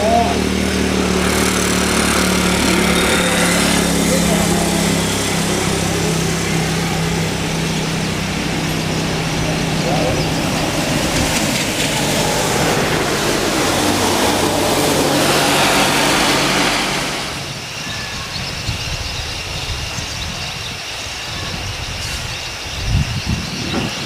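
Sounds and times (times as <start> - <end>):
vehicle engine hum: 0.0 - 18.0.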